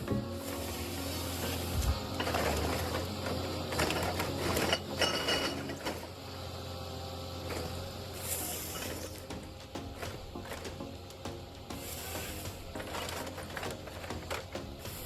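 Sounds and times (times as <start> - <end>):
low engine hum: 0.0 - 15.0
machinery clattering and grinding: 0.0 - 15.0.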